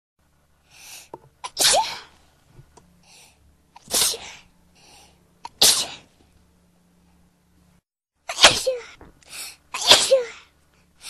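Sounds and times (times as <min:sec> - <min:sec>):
person sneezing: 0:01.4 - 0:02.2, 0:03.8 - 0:04.4, 0:05.4 - 0:06.1, 0:08.3 - 0:09.0, 0:09.8 - 0:10.4.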